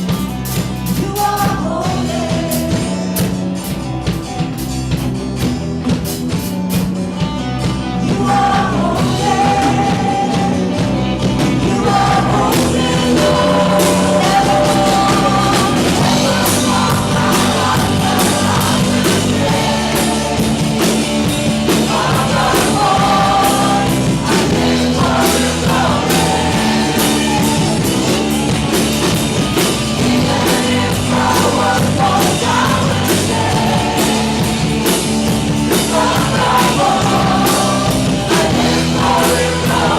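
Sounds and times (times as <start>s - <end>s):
worship band playing rock song: 0.0s - 39.9s
person singing: 0.9s - 3.2s, 7.9s - 20.9s, 29.8s - 35.0s.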